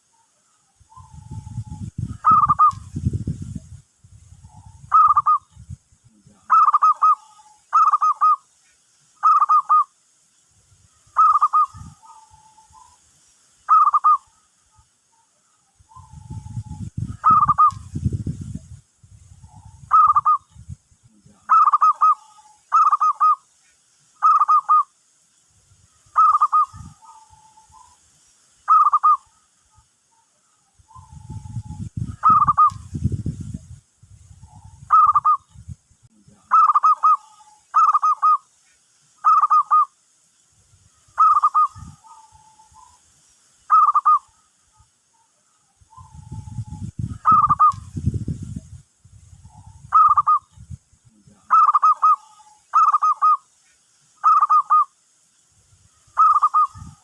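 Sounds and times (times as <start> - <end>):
dove cooing: 0.9 - 2.8, 4.4 - 5.4, 6.4 - 8.4, 9.2 - 9.8, 11.2 - 12.9, 13.7 - 14.4, 15.9 - 17.8, 19.4 - 20.4, 21.5 - 23.4, 24.2 - 24.8, 26.2 - 27.9, 28.7 - 29.4, 30.9 - 32.8, 34.4 - 35.4, 36.5 - 38.4, 39.2 - 39.9, 41.2 - 43.0, 43.7 - 44.4, 45.9 - 47.8, 49.4 - 50.5, 51.5 - 53.4, 56.2 - 57.0.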